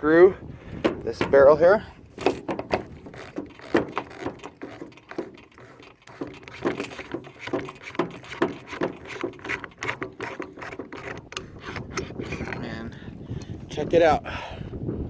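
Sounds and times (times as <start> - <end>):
small metal clicks and scrapes: 2.1 - 12.8.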